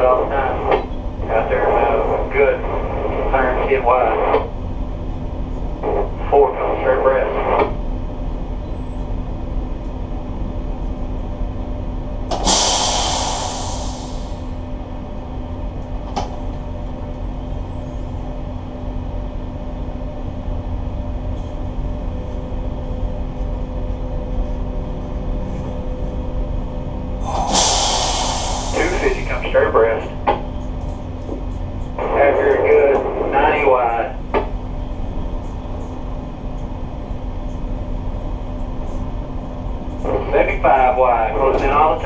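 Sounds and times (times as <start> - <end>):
boat engines droning: 0.0 - 7.8, 12.3 - 14.5, 27.2 - 38.4
burst of hiss: 12.3 - 14.5, 27.2 - 29.4.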